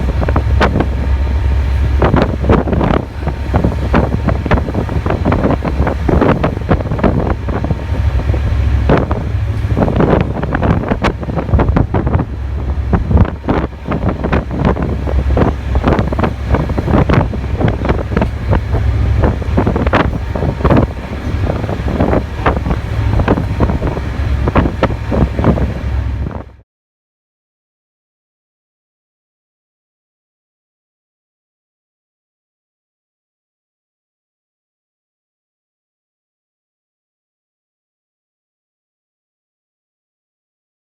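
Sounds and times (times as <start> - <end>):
steady low rumble: 0.0 - 26.6
wind buffeting microphone: 0.0 - 26.6.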